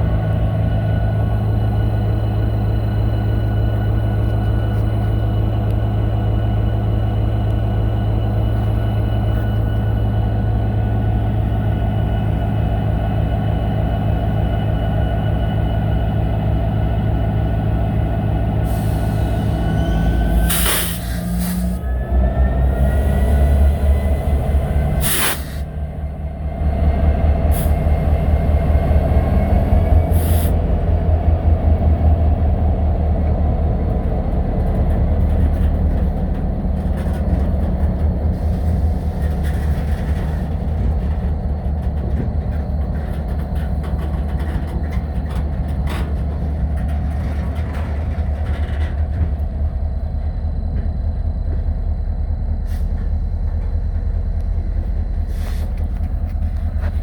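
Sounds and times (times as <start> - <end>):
train rumbling past: 0.0 - 57.0
wheels rattling on rails: 0.0 - 57.0.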